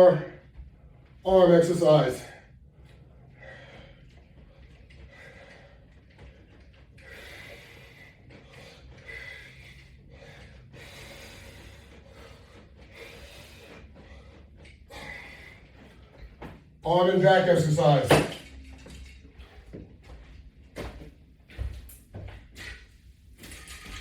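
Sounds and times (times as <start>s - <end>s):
low room hum: 0.0s - 24.0s
man breathing hard: 2.2s - 16.6s.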